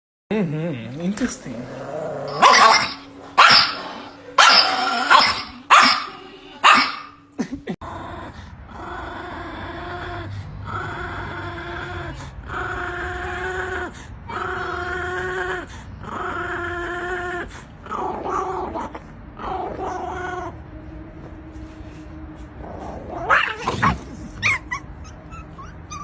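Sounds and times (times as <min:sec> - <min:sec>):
dog whining: 0:01.7 - 0:07.1, 0:22.7 - 0:26.0
dog barking: 0:02.3 - 0:07.2.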